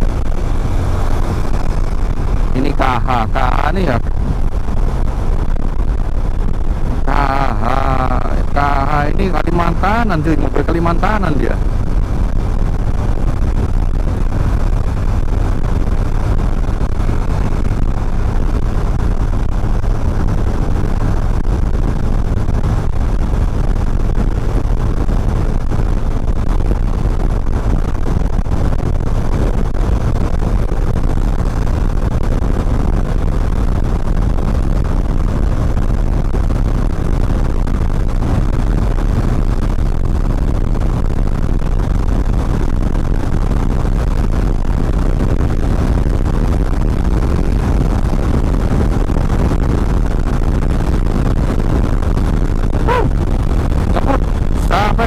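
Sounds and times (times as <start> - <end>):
motorcycle engine running: 0.0 - 41.2
road noise: 0.0 - 55.0
wind rush: 0.0 - 55.0.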